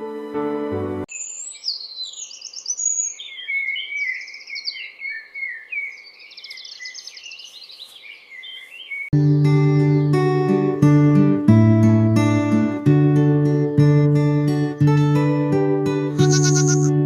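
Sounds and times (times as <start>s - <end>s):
songbird warbling and trilling: 1.1s - 9.1s
acoustic guitar music: 9.2s - 17.0s.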